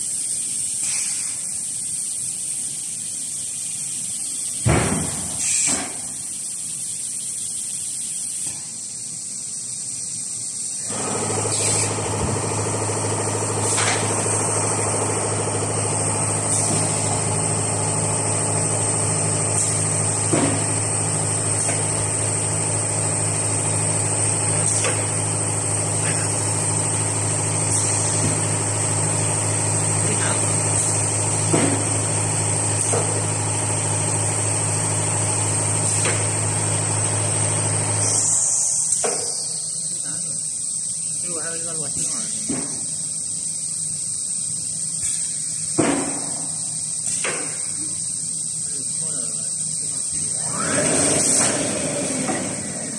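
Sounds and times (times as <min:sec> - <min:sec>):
machine hum: 0:10.8 - 0:38.8, 0:43.2 - 0:52.9.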